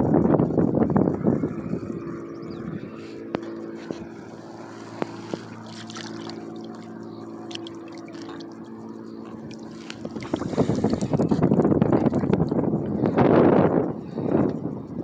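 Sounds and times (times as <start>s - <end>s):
steady motor hum: 0.0s - 15.0s.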